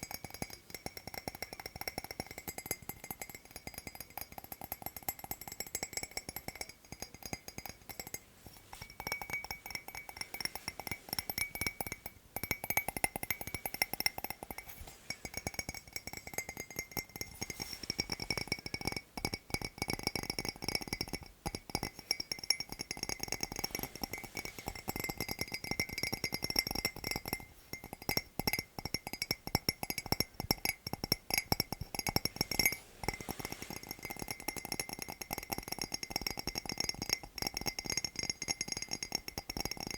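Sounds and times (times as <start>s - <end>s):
fingers tapping on glassy items: 0.0s - 39.9s.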